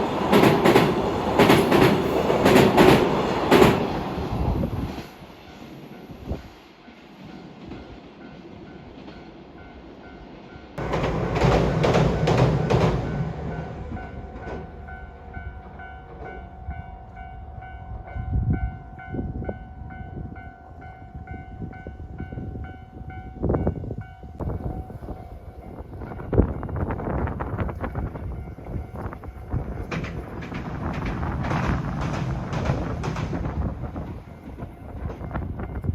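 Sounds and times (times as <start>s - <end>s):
train passing: 0.0s - 35.9s
crossing warning bell ringing: 12.2s - 27.2s.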